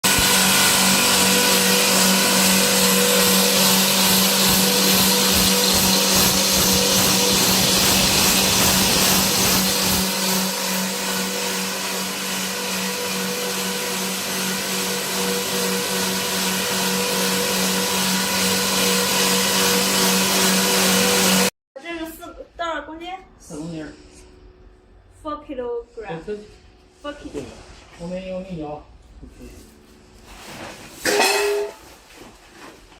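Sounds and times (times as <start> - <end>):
grinder motor humming: 0.0 - 21.5.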